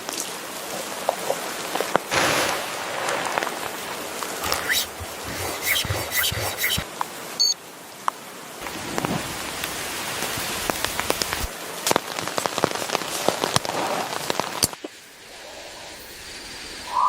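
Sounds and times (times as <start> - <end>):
rain drops ticking on a surface: 0.0 - 2.1, 7.8 - 16.6.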